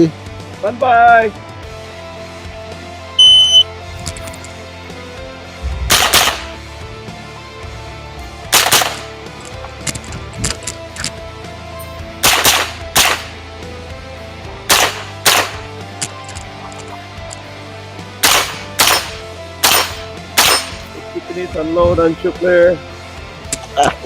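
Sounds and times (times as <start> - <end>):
rifle shots: 5.9 - 6.6, 8.5 - 9.1, 12.2 - 13.4, 14.7 - 15.7, 18.2 - 20.8.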